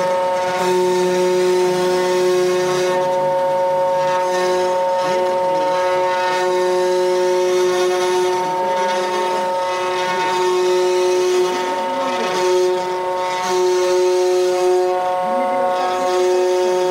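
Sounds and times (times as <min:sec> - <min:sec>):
wood router whining: 0:00.0 - 0:16.9.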